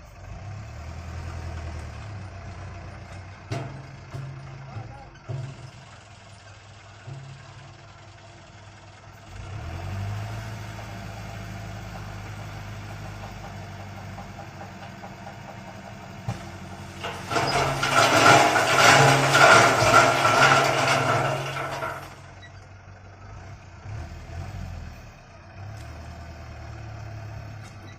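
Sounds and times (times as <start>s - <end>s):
diesel engine running: 0.0s - 27.9s
loud rough clattering: 3.4s - 6.0s, 13.0s - 22.5s.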